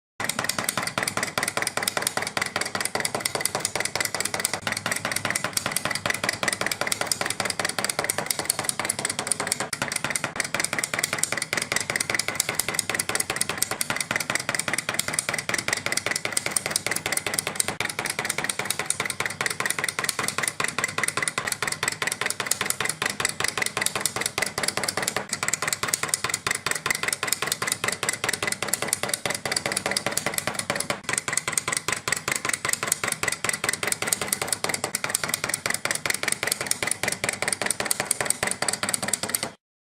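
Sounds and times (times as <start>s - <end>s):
toy dentures clacking: 0.2s - 39.6s.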